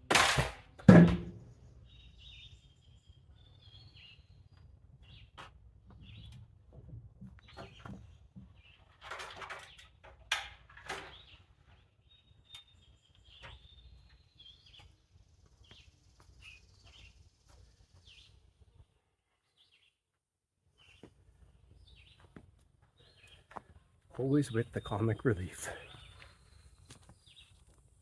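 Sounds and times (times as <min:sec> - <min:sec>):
birds chirping: 0:01.3 - 0:06.5, 0:07.4 - 0:09.0, 0:11.0 - 0:18.8, 0:20.8 - 0:27.8.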